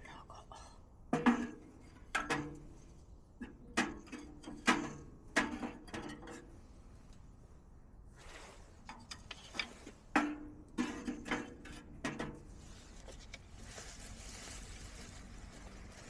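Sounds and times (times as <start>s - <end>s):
objects knocking and clattering: 1.2s - 6.5s, 8.9s - 12.6s.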